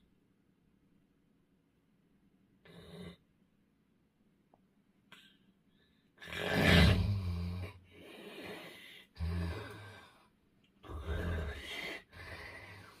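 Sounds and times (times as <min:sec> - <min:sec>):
man snoring: 0:06.2 - 0:07.8, 0:08.4 - 0:10.0.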